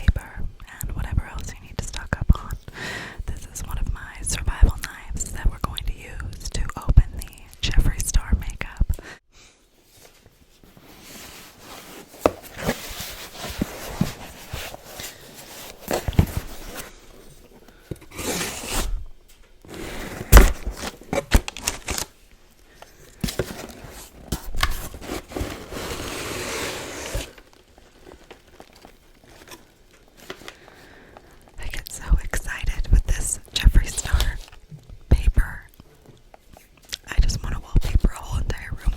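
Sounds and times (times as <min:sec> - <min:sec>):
wrapping crinkling and tearing: 0:19.6 - 0:31.6.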